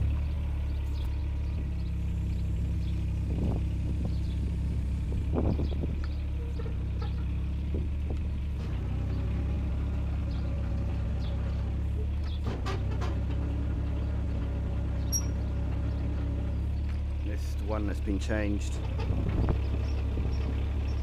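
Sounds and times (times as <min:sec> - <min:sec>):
excavator diesel engine running: 0:00.0 - 0:21.0
faint track clicks and squeaks: 0:15.0 - 0:15.5.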